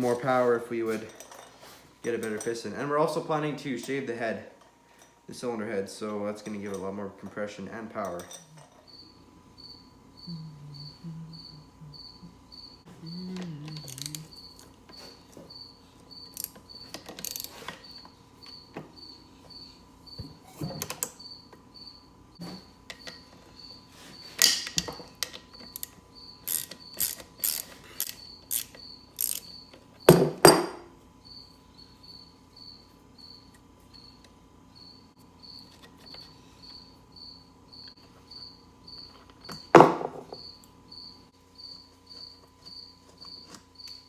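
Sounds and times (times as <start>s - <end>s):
metal tools clinking and knocking: 8.0s - 8.9s
cricket chirping: 8.3s - 30.5s, 31.1s - 44.0s.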